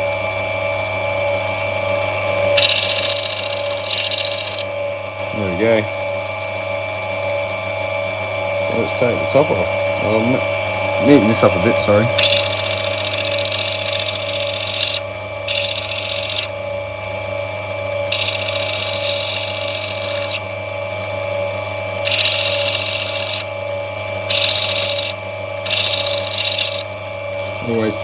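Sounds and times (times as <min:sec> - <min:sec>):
grinding wheel motor hum: 0:01.0 - 0:05.9, 0:08.6 - 0:28.0
stone hissing against grinder: 0:02.6 - 0:04.7, 0:12.2 - 0:16.5, 0:18.1 - 0:20.4, 0:22.0 - 0:23.5, 0:24.3 - 0:26.9.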